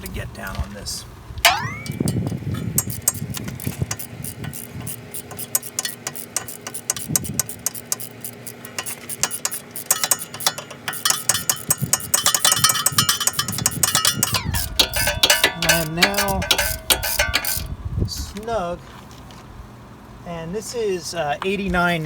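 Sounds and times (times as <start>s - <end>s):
metallic clinks from tool: 1.5s - 17.7s
ratchet wrench clicking: 1.5s - 17.7s.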